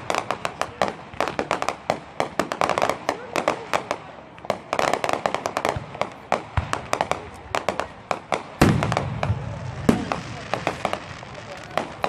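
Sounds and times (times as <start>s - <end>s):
fireworks cracking: 0.0s - 12.0s
heavy low firework boom: 8.6s - 11.3s.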